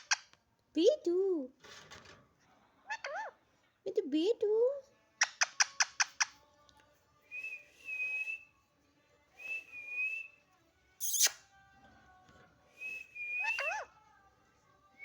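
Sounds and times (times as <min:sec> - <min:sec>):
sharp chirps: 0:11.0 - 0:11.4.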